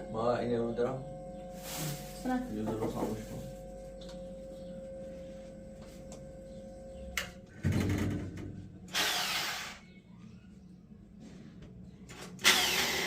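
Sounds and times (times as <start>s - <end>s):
faint steady hum: 0.0s - 12.2s
power drill running: 8.9s - 9.8s, 12.4s - 13.0s.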